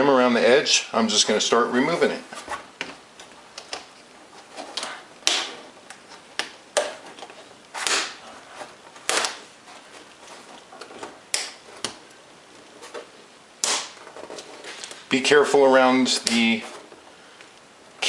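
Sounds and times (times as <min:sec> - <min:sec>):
plastic clips snapping: 0:04.8 - 0:08.2, 0:09.0 - 0:09.4, 0:10.8 - 0:12.0, 0:13.6 - 0:14.1.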